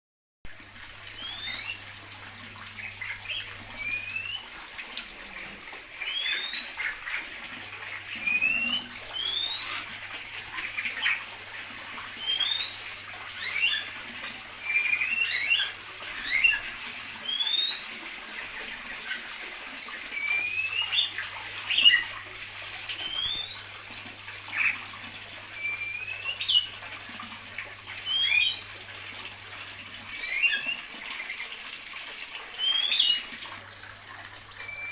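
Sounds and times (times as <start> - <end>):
rising whistled bird calls: 1.2 - 1.9, 3.3 - 4.5, 6.0 - 6.9, 8.2 - 9.9, 12.2 - 14.0, 14.6 - 18.0, 20.1 - 22.1, 23.0 - 23.7, 25.5 - 26.7, 28.0 - 28.7, 30.1 - 30.9, 32.5 - 33.3, 34.6 - 34.9
small birds chirping: 1.2 - 1.9, 6.0 - 7.0, 8.2 - 9.9, 12.2 - 14.0, 14.6 - 18.0, 23.0 - 23.6, 28.0 - 28.7, 32.6 - 33.3.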